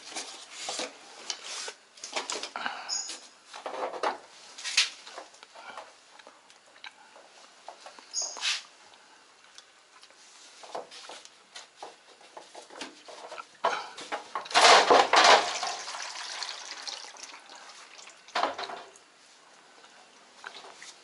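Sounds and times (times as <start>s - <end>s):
tools and parts clattering: 12.2s - 15.8s.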